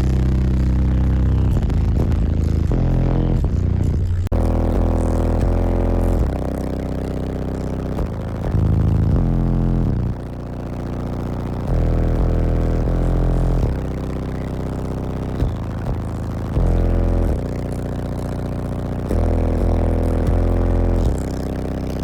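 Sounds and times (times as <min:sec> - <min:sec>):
loud deep bass from subwoofers: 0:00.0 - 0:22.0.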